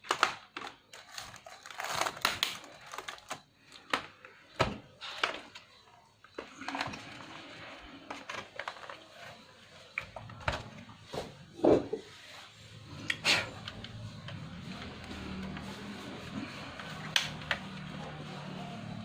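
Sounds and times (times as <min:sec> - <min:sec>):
plastic laptop parts clicking: 0:00.0 - 0:05.6.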